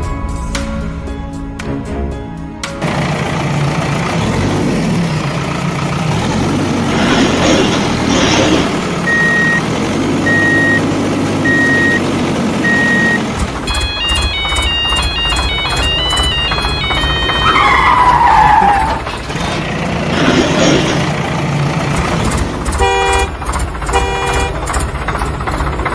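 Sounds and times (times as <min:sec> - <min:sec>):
truck engine running: 0:00.0 - 0:25.9
reversing beeper: 0:08.3 - 0:19.0
bright melody: 0:09.0 - 0:18.0.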